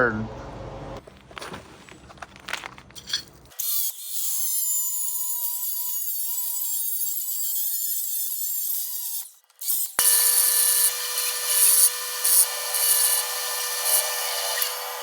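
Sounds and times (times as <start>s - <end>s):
angle grinder cutting steel: 3.5s - 15.0s.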